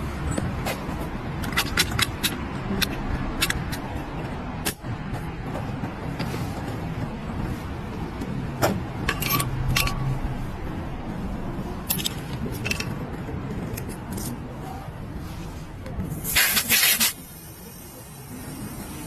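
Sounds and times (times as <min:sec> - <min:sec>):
metal hand tools clicking and scraping: 0:01.4 - 0:04.0, 0:09.0 - 0:10.1, 0:11.8 - 0:14.4, 0:16.3 - 0:17.2.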